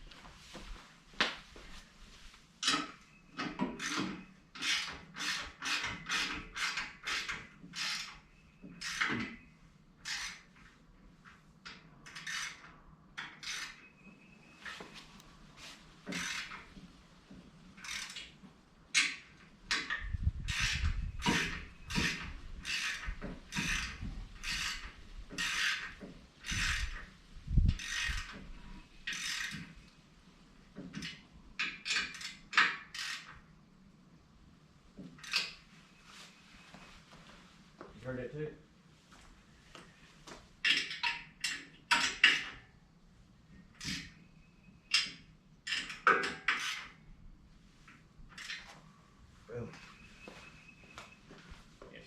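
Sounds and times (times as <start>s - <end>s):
ratcheting strokes: 19.0s - 27.1s.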